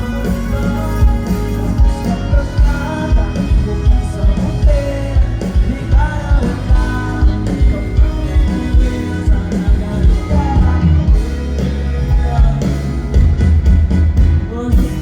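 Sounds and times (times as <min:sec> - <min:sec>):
band music with singing: 0:00.0 - 0:15.0.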